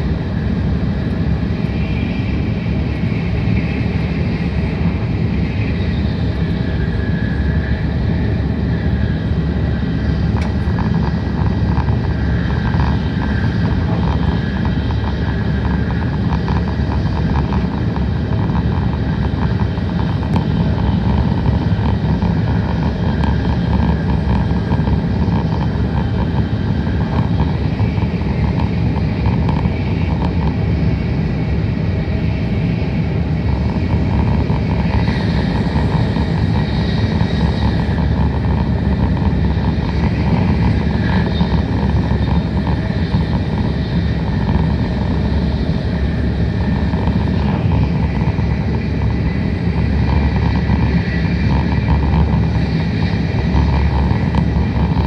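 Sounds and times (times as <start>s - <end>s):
train wheels rumbling on rail: 0.0s - 55.0s
rushing air: 46.0s - 55.0s.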